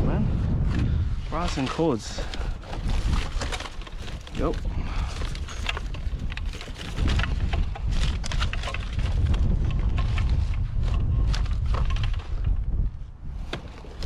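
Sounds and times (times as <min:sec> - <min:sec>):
wind buffeting microphone: 0:00.0 - 0:14.0
junk rattling and knocking: 0:01.4 - 0:12.7.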